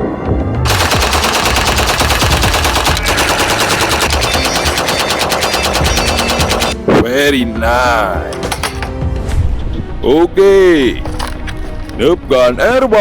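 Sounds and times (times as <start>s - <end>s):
toy gun automatic fire effect: 0.7s - 6.8s.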